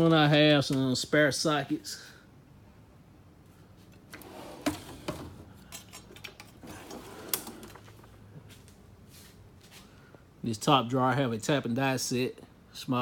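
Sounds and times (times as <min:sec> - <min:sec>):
metal drawer rattling slide: 0:04.1 - 0:08.0
metal drawers clacking: 0:04.1 - 0:08.1.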